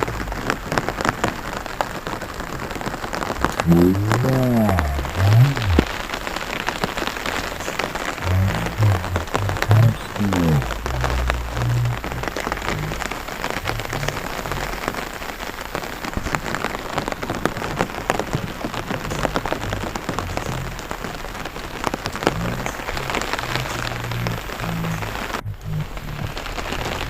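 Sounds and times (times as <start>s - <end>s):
rain falling on water: 0.0s - 27.0s.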